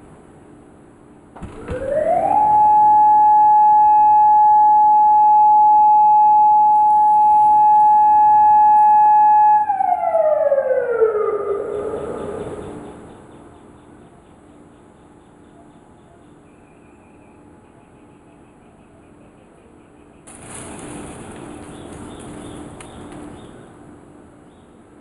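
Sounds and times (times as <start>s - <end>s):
outdoor warning siren: 1.4s - 13.8s.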